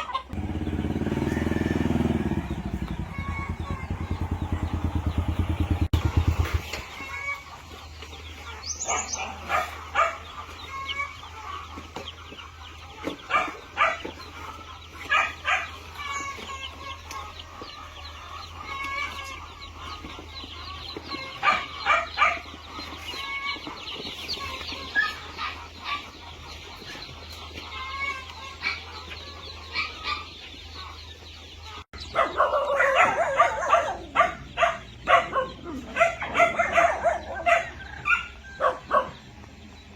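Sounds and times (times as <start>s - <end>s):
chickens clucking: 0.0s - 39.9s.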